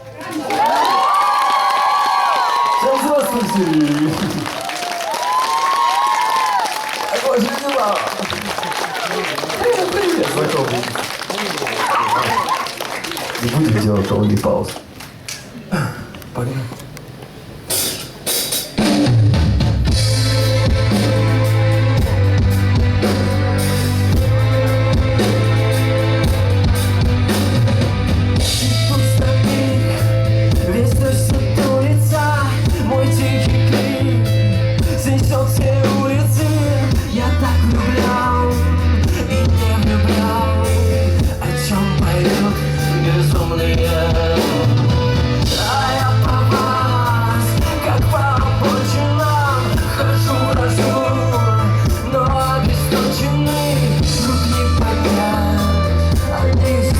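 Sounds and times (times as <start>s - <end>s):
live rock band playing: 17.7s - 56.9s.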